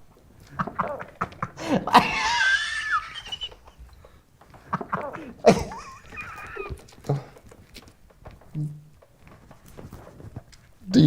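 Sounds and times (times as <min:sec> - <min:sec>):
wheezing laughter: 0:00.5 - 0:07.4.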